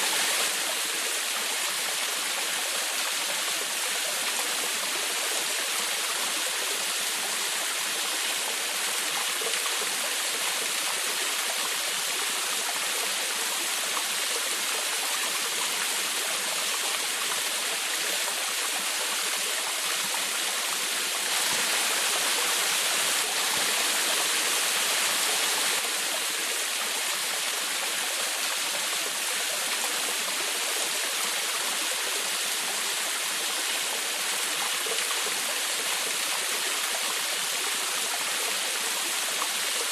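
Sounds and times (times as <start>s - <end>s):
small waterfall splashing: 0.0s - 39.9s.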